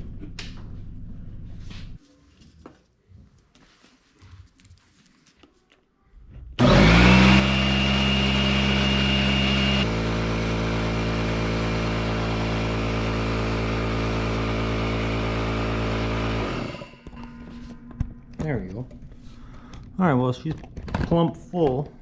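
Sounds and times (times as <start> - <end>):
air compressor running: 6.6 - 17.2.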